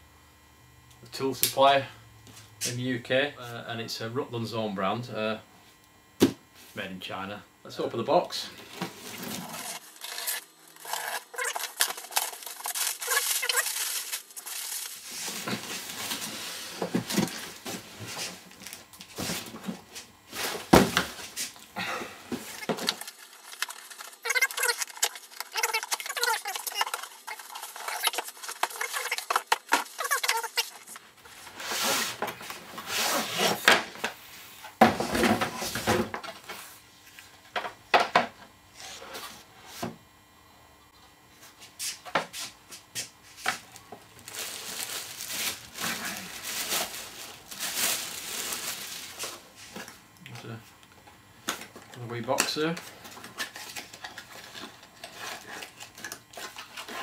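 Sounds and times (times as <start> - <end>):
cardboard rustling and crackling: 8.5 - 21.6, 22.4 - 33.7, 43.4 - 49.9.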